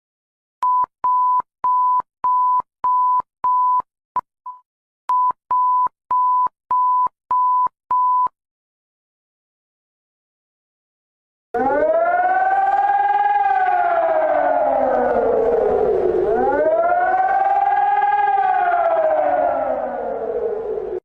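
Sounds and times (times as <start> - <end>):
electronic alarm beeps: 4.5 - 8.3.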